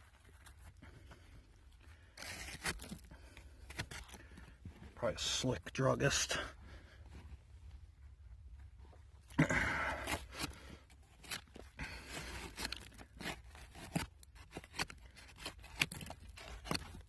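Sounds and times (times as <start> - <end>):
shovel scraping dirt and debris: 2.1 - 4.2.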